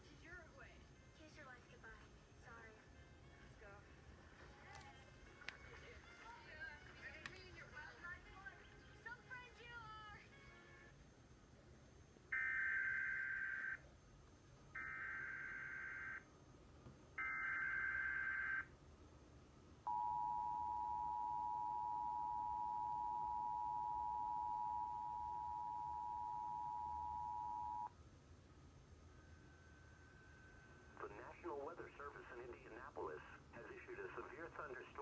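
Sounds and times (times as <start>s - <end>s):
two-tone attention signal: 19.9s - 27.9s.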